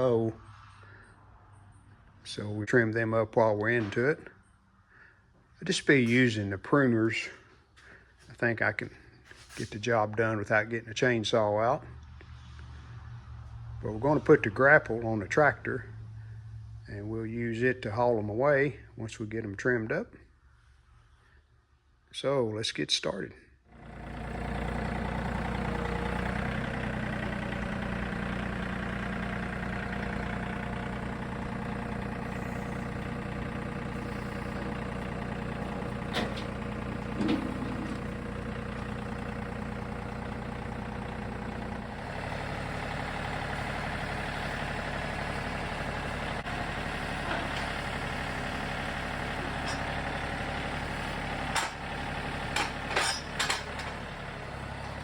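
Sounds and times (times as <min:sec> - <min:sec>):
tractor diesel engine running: 0:00.0 - 0:04.2, 0:23.7 - 0:55.0.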